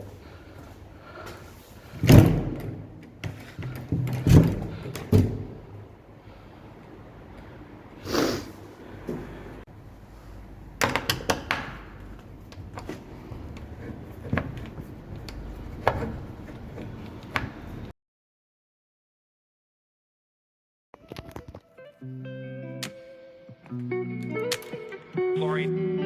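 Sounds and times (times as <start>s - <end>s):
sharp clicks: 23.7s - 25.0s.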